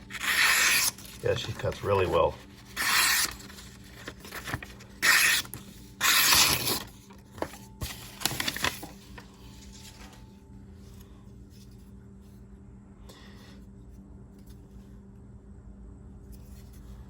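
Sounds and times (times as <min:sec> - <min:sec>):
knife slicing through paper: 0:00.1 - 0:06.9.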